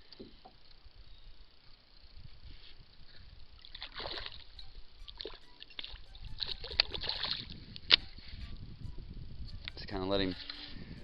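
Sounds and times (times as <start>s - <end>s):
fish splashing in water: 3.6s - 4.5s.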